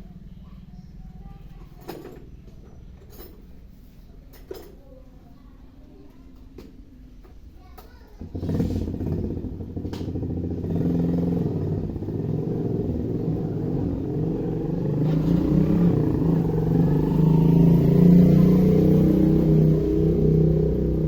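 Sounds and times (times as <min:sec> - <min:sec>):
low engine rumble: 0:08.2 - 0:21.0.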